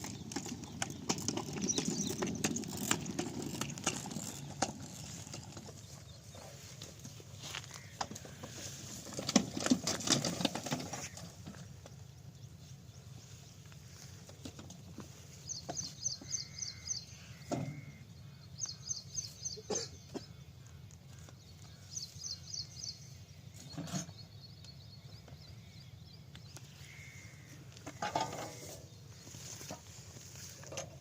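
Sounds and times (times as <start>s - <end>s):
bird chirping: 0.0s - 3.2s, 15.4s - 27.2s.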